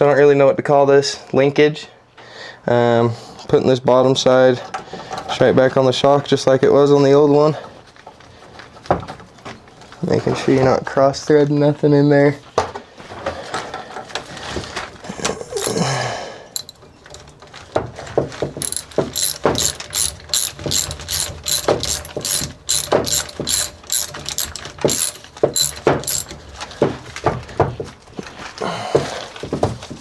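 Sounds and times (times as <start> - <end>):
ratchet wrench clicking: 15.6 - 15.8, 16.6 - 17.2, 18.6 - 26.4
metal tools clattering: 15.6 - 16.0, 16.6 - 17.4, 18.6 - 26.4.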